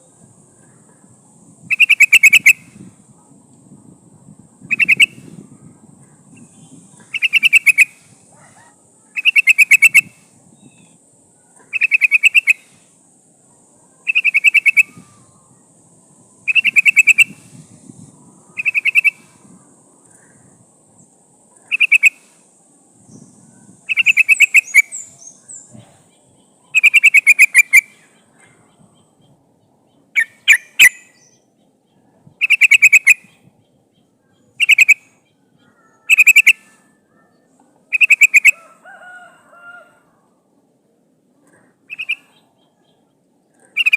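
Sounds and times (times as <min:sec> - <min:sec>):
bulbul bubbling call: 0:01.7 - 0:02.6, 0:04.7 - 0:05.2, 0:07.0 - 0:07.9, 0:09.2 - 0:10.1, 0:11.7 - 0:12.6, 0:18.6 - 0:19.2, 0:23.9 - 0:25.1, 0:26.8 - 0:27.9, 0:32.4 - 0:33.2, 0:34.6 - 0:35.0, 0:36.1 - 0:36.6, 0:37.9 - 0:38.6.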